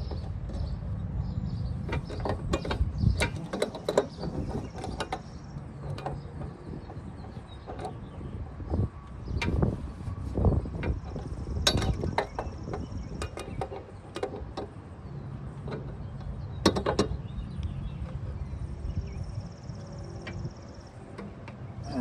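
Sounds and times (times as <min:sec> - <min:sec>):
tools clicking and knocking on metal: 0:01.9 - 0:08.0, 0:10.8 - 0:14.8.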